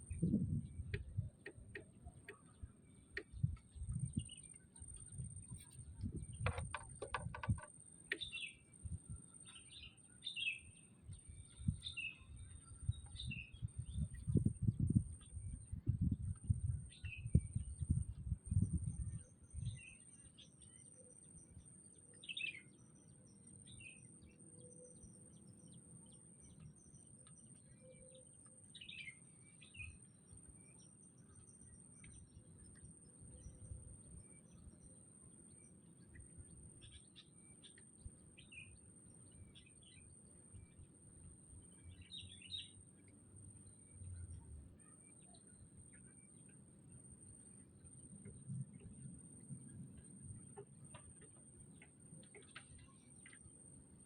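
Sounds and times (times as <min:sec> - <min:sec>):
birds chirping: 0:00.1 - 0:15.7.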